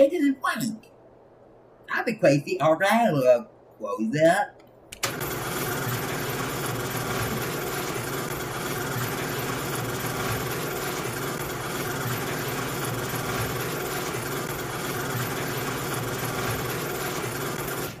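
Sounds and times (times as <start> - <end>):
garage door motor running: 5.0 - 18.0.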